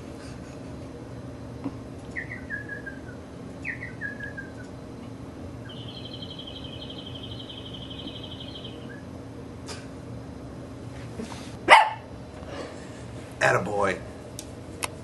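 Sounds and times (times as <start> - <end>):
bird chirping phrases: 2.1 - 4.7, 5.6 - 9.1
rapid high bird trill: 2.2 - 4.6, 5.6 - 9.1.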